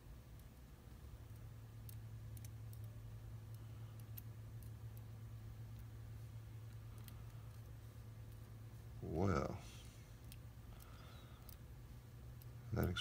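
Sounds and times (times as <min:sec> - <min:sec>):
steady low hum: 0:00.0 - 0:13.0
faint light clicks of small tools: 0:00.3 - 0:05.1, 0:06.6 - 0:08.5, 0:09.8 - 0:11.7.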